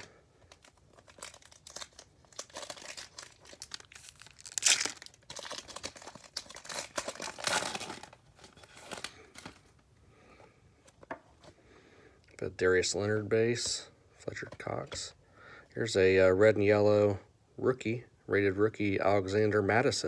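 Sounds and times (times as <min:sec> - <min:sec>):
foil pack tearing and crinkling: 0:00.0 - 0:09.7.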